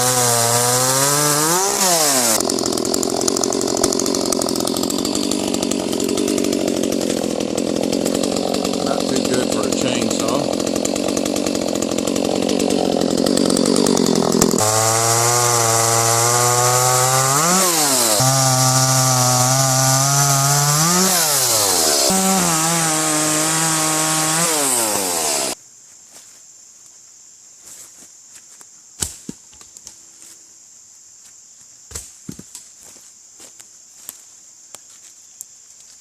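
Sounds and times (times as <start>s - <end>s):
chainsaw running: 0.0s - 25.6s.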